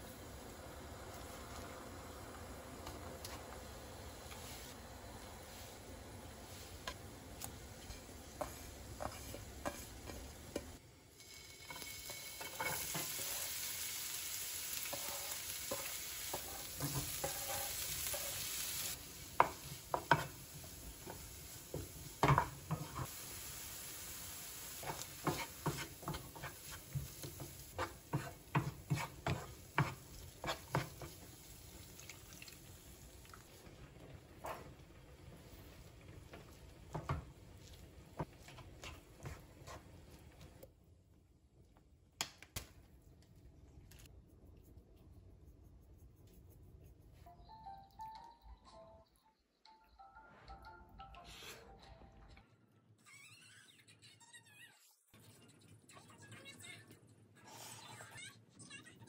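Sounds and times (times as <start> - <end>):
food sizzling in a pan: 0.0 - 40.7
utensil stirring in a pan: 0.0 - 40.7.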